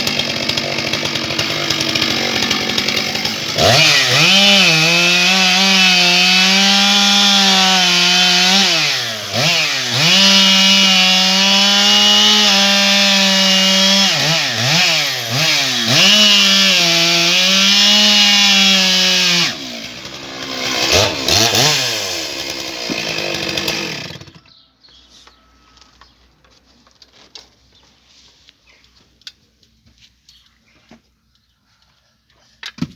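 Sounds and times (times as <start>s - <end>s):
chainsaw cutting logs: 0.0s - 24.4s.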